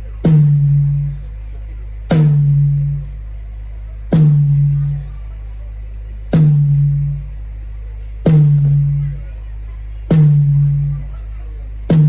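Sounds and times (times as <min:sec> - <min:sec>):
low drum hit over loudspeakers: 0:00.0 - 0:01.4, 0:02.1 - 0:03.2, 0:04.1 - 0:05.3, 0:06.3 - 0:07.4, 0:08.2 - 0:09.4, 0:10.1 - 0:12.0
steady low hum: 0:00.0 - 0:12.0.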